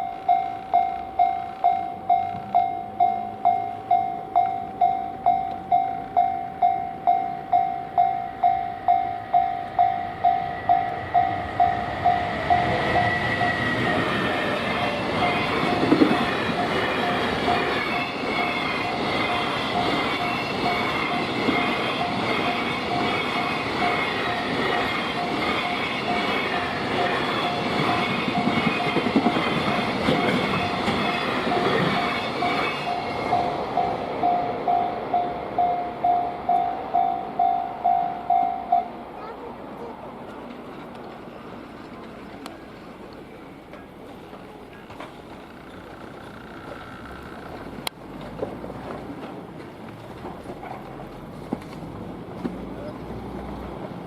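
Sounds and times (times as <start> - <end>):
level-crossing alarm ringing: 0.0 - 39.0
train rumbling over rails: 0.0 - 54.0.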